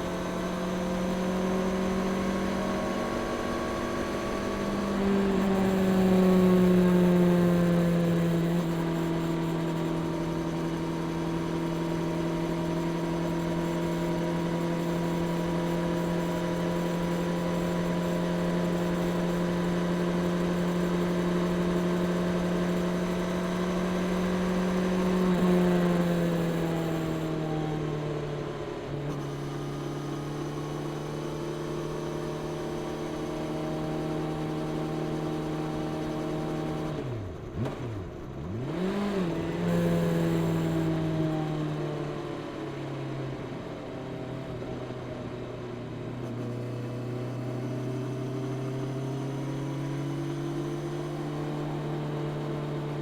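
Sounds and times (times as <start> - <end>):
motorcycle engine revving: 0.0 - 27.9, 29.1 - 44.7.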